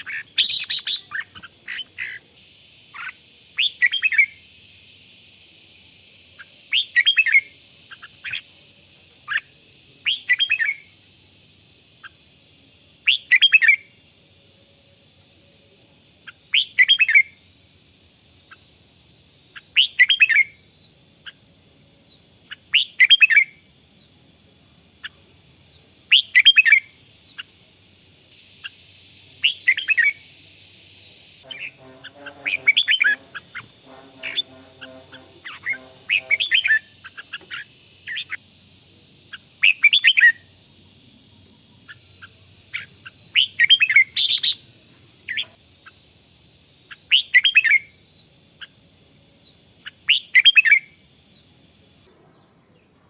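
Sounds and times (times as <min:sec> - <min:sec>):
bird chirping song: 0:00.0 - 0:04.4, 0:06.4 - 0:11.0, 0:13.0 - 0:13.9, 0:16.2 - 0:17.4, 0:18.4 - 0:24.2, 0:24.9 - 0:27.7, 0:28.4 - 0:38.5, 0:39.3 - 0:40.7, 0:41.3 - 0:52.0
thin high tone: 0:31.4 - 0:37.6.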